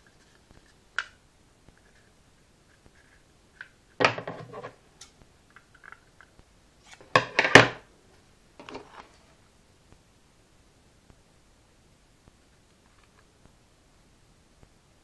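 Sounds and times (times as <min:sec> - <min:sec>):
hard objects knocking and clattering: 0:03.6 - 0:04.8, 0:07.0 - 0:07.8.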